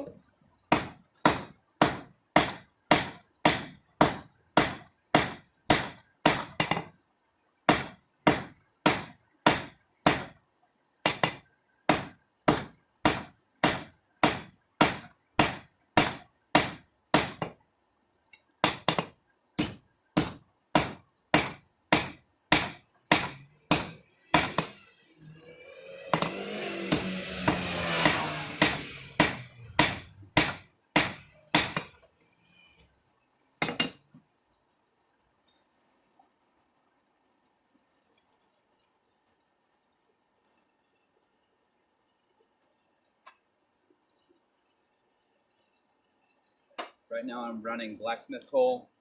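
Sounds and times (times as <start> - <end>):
hammer striking metal on anvil: 0.7 - 6.8, 18.6 - 24.8, 26.1 - 31.9.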